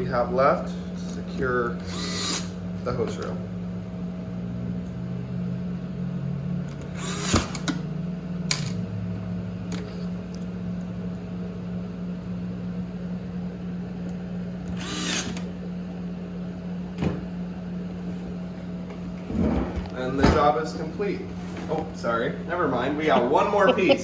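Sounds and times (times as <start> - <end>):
power tool motor hum: 1.8 - 2.6, 6.7 - 7.8, 14.6 - 15.6.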